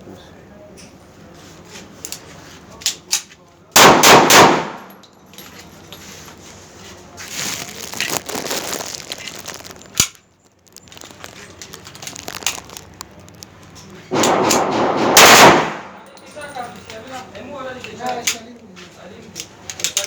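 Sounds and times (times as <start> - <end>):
pistol shots: 3.8 - 5.0, 14.1 - 16.1.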